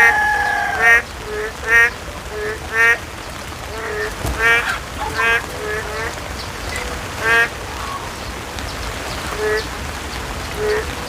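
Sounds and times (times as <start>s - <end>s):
rooster crowing: 0.0s - 1.0s
fowl honking calls: 0.0s - 3.0s, 3.6s - 6.3s, 7.1s - 8.2s.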